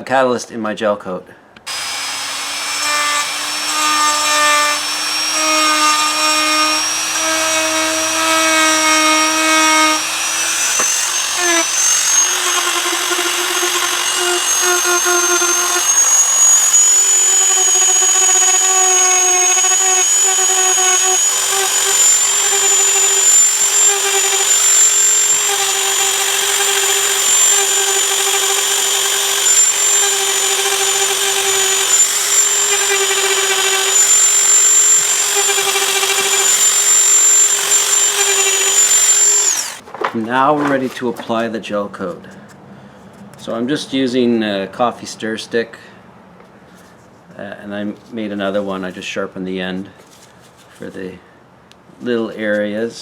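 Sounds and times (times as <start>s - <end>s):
rotary grinding tool whine: 1.7s - 39.8s.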